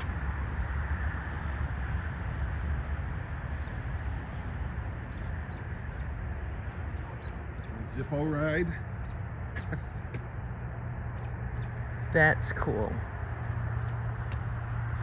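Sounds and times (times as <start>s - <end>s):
low outdoor rumbling: 0.0s - 15.0s.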